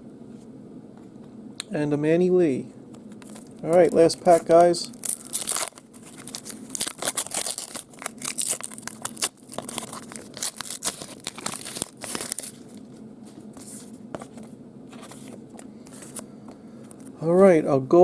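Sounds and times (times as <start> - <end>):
wrapper tearing and crinkling: 3.2 - 12.9.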